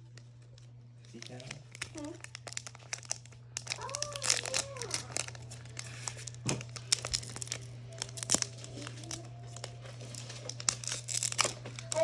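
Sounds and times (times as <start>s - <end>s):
foil wrappers crinkling: 0.0s - 12.0s.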